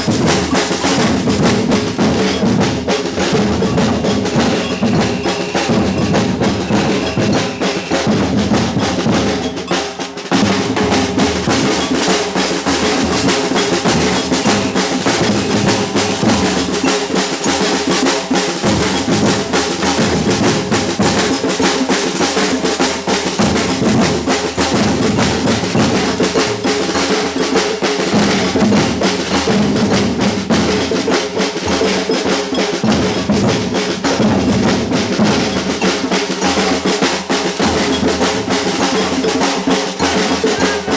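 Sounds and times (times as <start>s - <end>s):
bass drums: 0.0s - 9.5s, 10.3s - 31.1s
samba percussion band: 0.0s - 40.9s
snare drums: 0.0s - 40.9s.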